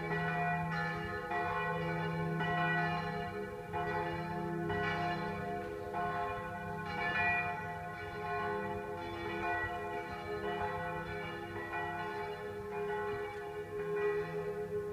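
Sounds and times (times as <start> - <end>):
church bells pealing: 0.0 - 14.9.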